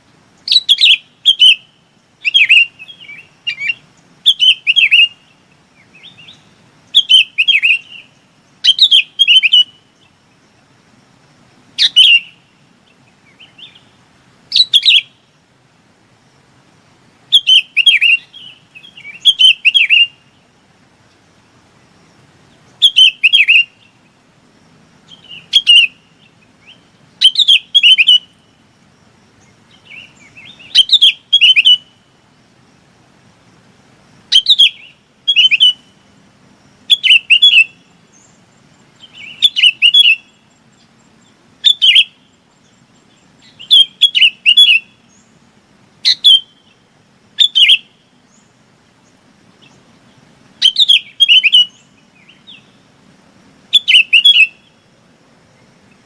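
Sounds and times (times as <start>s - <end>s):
bulbul calling: 0.4s - 10.2s, 11.7s - 15.3s, 17.3s - 20.4s, 22.5s - 24.2s, 25.0s - 28.7s, 29.3s - 32.2s, 34.3s - 36.1s, 36.8s - 45.4s, 46.0s - 46.8s, 47.4s - 52.8s, 53.7s - 55.0s.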